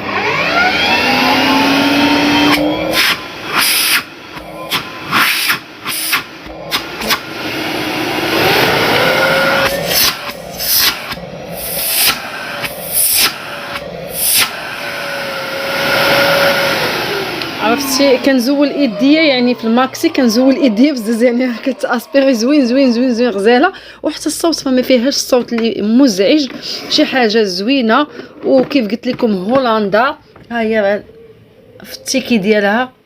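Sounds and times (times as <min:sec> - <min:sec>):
vacuum cleaner motor whine: 0:00.0 - 0:23.7
vacuum airflow rush: 0:00.4 - 0:25.2, 0:25.8 - 0:28.5.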